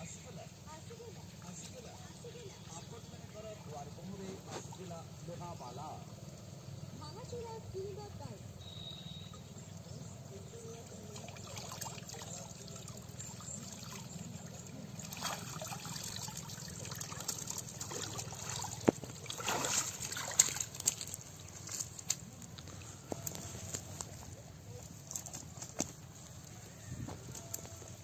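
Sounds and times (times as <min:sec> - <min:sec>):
water trickling and splashing: 0:10.5 - 0:26.0.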